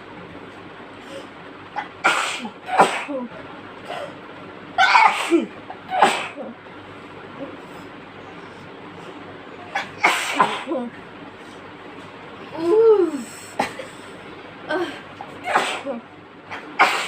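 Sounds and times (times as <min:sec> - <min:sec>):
woman sneezing: 0:01.8 - 0:03.3, 0:04.8 - 0:06.5, 0:09.8 - 0:10.9, 0:14.8 - 0:16.0, 0:16.6 - 0:17.0.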